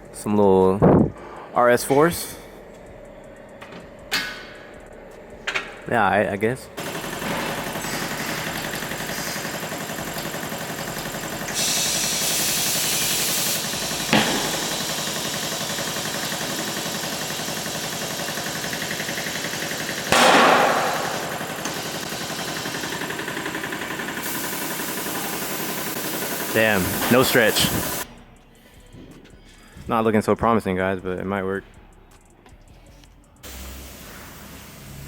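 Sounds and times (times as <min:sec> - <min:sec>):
machine running: 0:06.7 - 0:29.1
high hissing: 0:07.6 - 0:28.1.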